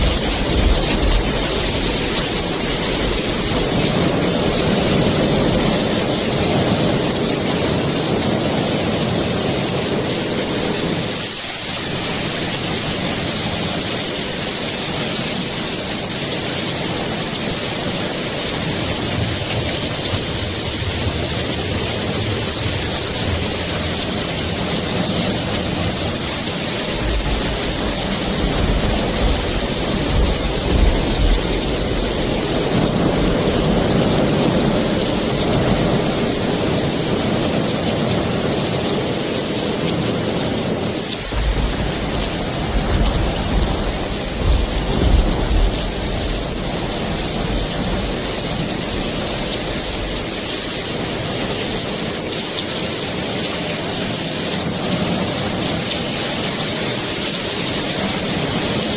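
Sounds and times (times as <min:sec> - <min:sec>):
low thunder rumbling: 0:00.0 - 0:11.4, 0:12.0 - 0:52.1
heavy rain hiss: 0:00.0 - 0:58.9.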